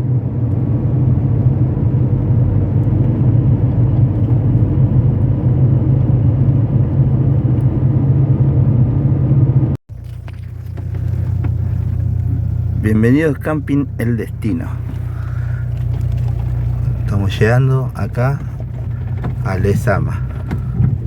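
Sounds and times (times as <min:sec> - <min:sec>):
car engine and road rumble: 0:00.0 - 0:21.0.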